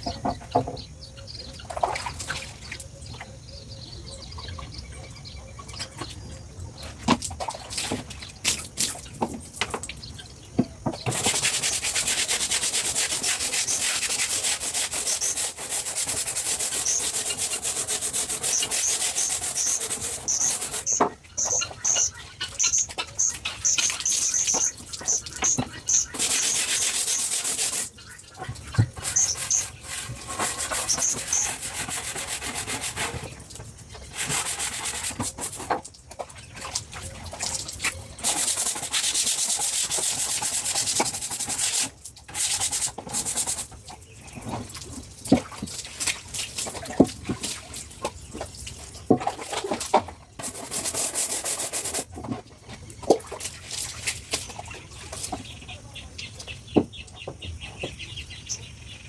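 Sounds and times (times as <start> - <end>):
faint birds chirping: 0.0 - 11.8, 14.9 - 34.1, 43.5 - 45.6, 52.3 - 59.0
stiff brush scrubbing floor: 11.0 - 22.1, 23.5 - 28.0, 28.6 - 33.4, 34.0 - 35.8, 38.2 - 43.8, 50.4 - 52.4.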